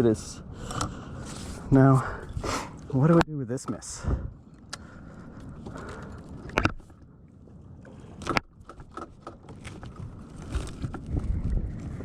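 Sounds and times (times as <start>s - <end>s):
wind noise: 0.0s - 3.2s, 3.8s - 7.0s, 7.6s - 12.0s
water around kayak: 0.4s - 12.0s.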